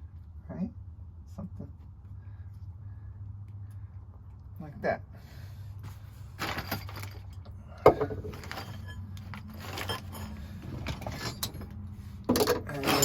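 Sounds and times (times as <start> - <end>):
low steady hum: 0.0 - 13.0
scraping and clicking of tools: 6.4 - 13.0.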